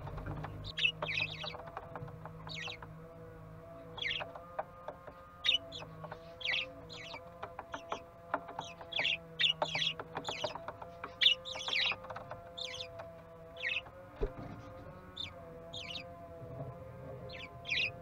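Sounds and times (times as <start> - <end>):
budgerigars chirping: 0.4 - 2.9, 3.9 - 4.4, 5.4 - 13.9, 15.0 - 16.1, 17.2 - 18.0.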